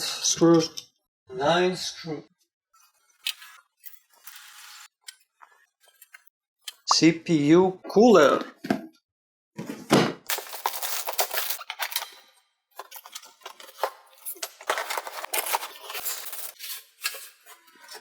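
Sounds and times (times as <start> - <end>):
cardboard rustling: 10.3 - 12.2, 12.8 - 18.0
plastic wrap crinkling: 10.3 - 18.0.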